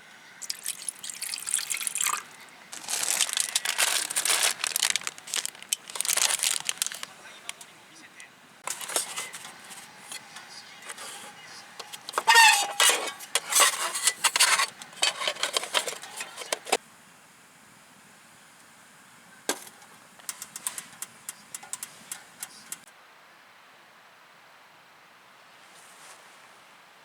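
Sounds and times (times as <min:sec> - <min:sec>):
small hard objects clattering: 0:00.4 - 0:07.7, 0:08.6 - 0:16.8, 0:19.5 - 0:22.8.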